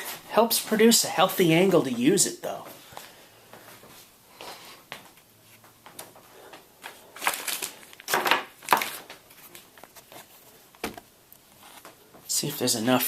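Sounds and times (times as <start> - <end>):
netbook handling scrapes and clicks: 6.8 - 12.0.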